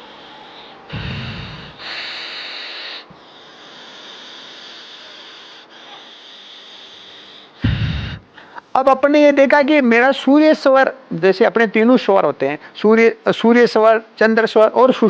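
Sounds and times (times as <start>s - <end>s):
steady faint hiss: 0.0s - 15.0s
man blowing through nose: 0.9s - 5.4s, 7.5s - 8.4s.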